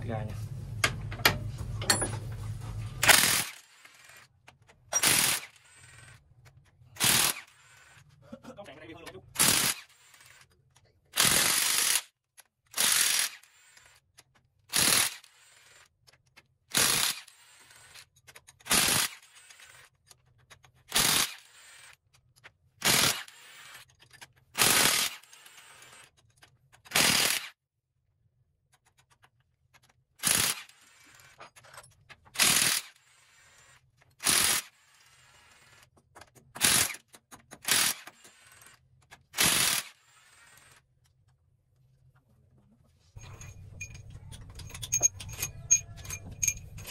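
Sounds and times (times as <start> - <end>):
pneumatic impact wrench rattling: 3.0 - 4.2, 4.8 - 6.2, 7.0 - 8.0, 9.4 - 10.4, 11.2 - 12.1, 12.7 - 14.0, 14.7 - 15.9, 16.7 - 19.9, 20.8 - 22.0, 22.8 - 26.2, 26.8 - 27.6, 30.2 - 40.8, 43.2 - 46.9.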